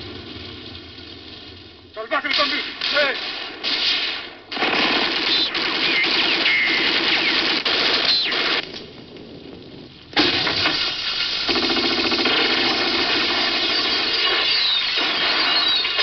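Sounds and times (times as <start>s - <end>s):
gunfire: 2.1s - 8.9s, 10.2s - 16.0s
thin whistling lines: 13.6s - 16.0s.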